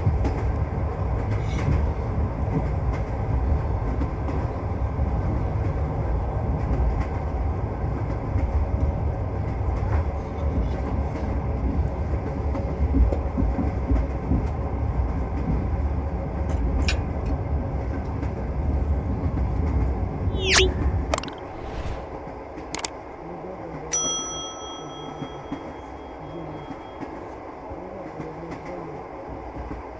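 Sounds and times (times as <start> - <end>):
train wheels rumbling on rails: 0.0 - 20.2, 24.6 - 29.9
high tone sliding down: 20.3 - 22.2.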